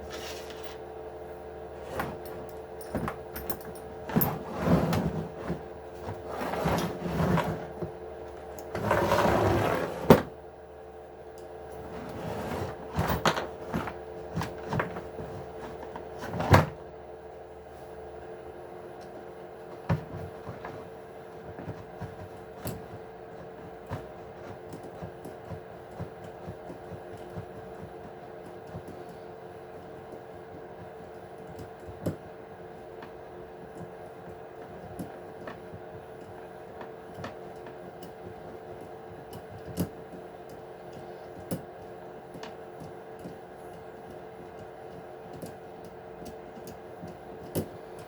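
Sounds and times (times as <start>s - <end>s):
small parts and tools handled: 0.0s - 0.9s
steady hum: 0.0s - 48.0s.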